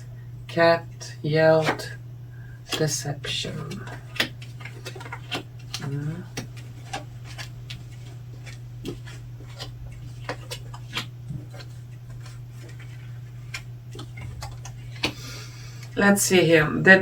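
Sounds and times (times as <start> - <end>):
steady low hum: 0.0 - 17.0
cards clicking and tapping: 1.6 - 1.9, 3.5 - 16.0.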